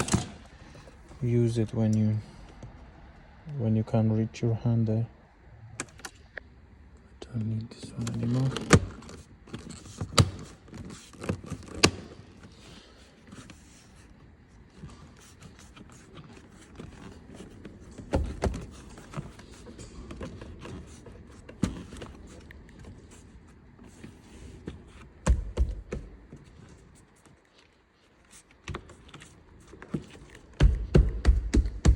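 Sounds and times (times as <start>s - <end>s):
car trim pieces clicking and knocking: 8.0s - 12.5s, 15.4s - 22.9s, 23.9s - 26.7s.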